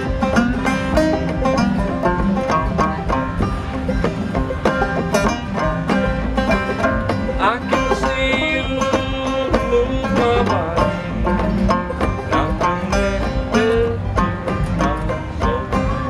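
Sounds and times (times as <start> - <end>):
bass line: 0.0 - 16.0
clawhammer banjo playing: 0.0 - 16.0
string instruments: 0.0 - 16.0.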